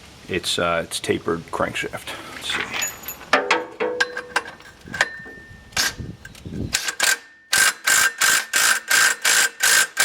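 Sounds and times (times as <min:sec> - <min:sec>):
impact gun bursts: 0:06.8 - 0:10.0.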